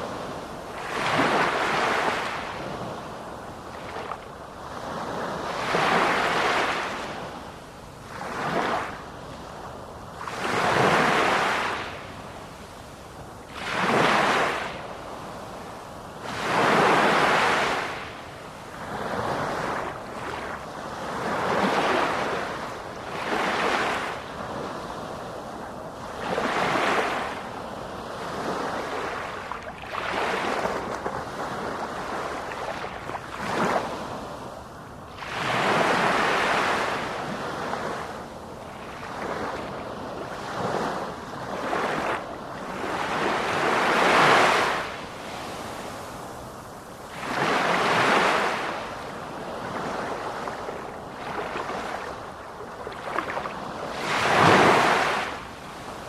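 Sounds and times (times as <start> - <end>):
sea waves breaking: 0.0 - 3.1, 38.9 - 56.0.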